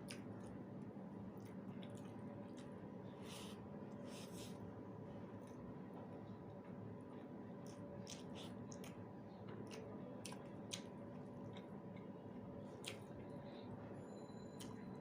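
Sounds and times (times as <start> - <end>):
steady background hum: 0.0 - 15.0
chewing food: 1.3 - 4.4, 7.5 - 13.4.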